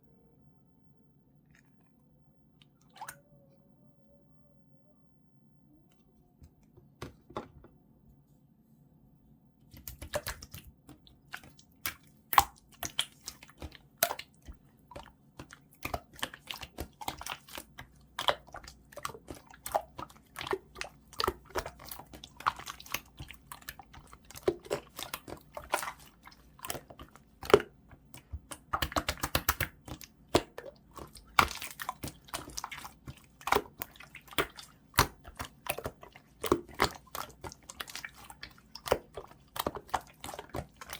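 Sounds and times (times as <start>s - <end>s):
slime squished by hand: 9.7s - 40.9s.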